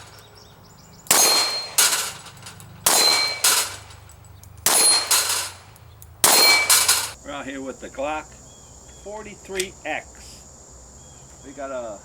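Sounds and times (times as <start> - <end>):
steel targets clanging: 0.0 - 7.2.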